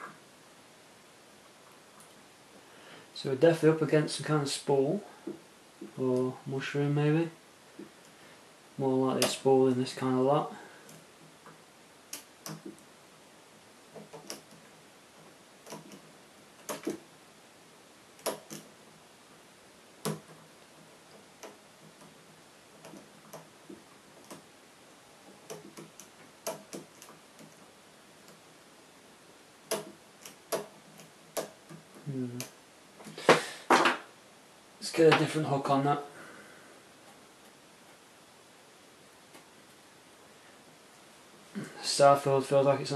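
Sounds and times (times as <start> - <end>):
lock pick clicking on pins: 15.6 - 17.0, 18.2 - 18.7, 25.5 - 27.6, 29.7 - 32.5.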